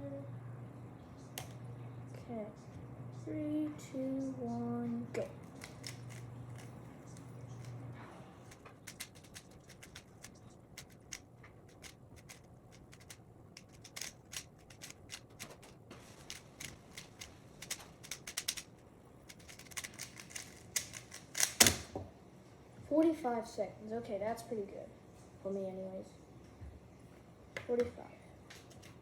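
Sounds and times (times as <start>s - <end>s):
puzzle cube plastic clicks: 5.5s - 7.8s, 8.5s - 21.9s.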